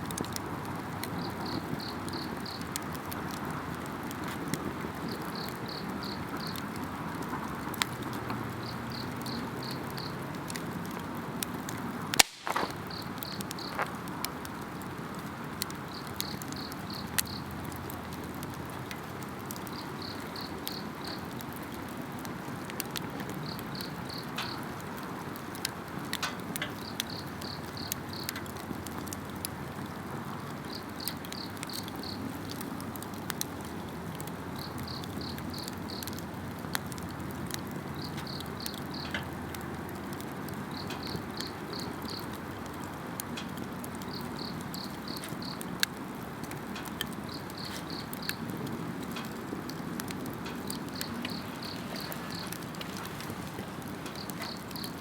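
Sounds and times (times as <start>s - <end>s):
campfire crackling and popping: 0.0s - 55.0s
insect chirping: 44.2s - 45.6s, 50.7s - 55.0s.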